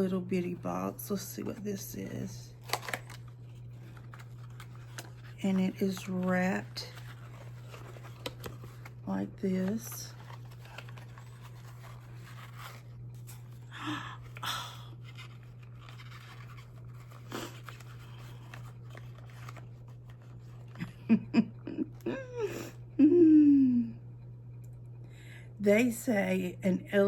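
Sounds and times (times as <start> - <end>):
steady low hum: 0.0 - 27.0
foam packing rustling: 2.6 - 13.7.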